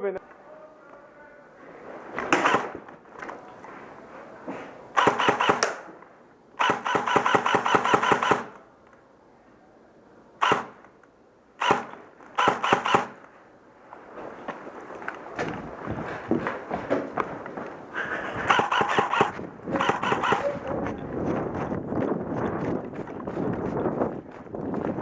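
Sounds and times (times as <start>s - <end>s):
airsoft guns firing bursts: 2.3s - 2.8s, 4.9s - 5.9s, 6.6s - 8.6s, 10.4s - 10.8s, 11.6s - 13.2s, 18.5s - 20.6s.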